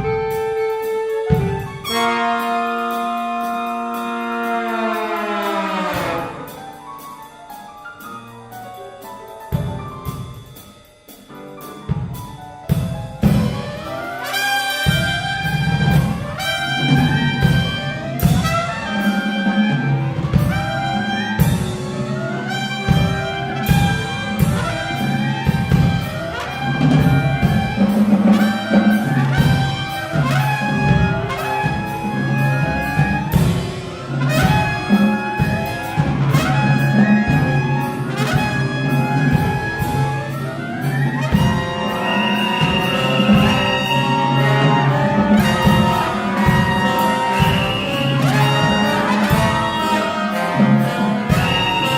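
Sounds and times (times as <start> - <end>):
trumpet and trombones: 0.0 - 6.8, 13.2 - 51.9
chamber ensemble playing loudly: 0.0 - 7.4, 13.2 - 51.9
percussion hits: 9.1 - 51.9.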